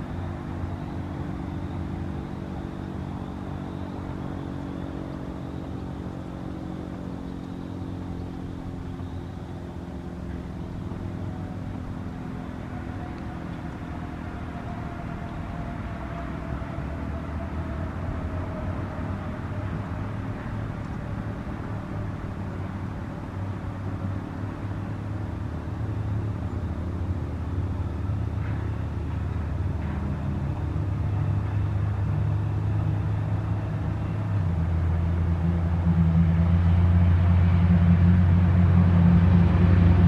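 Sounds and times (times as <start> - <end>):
siren winding down: 12.4 - 21.1.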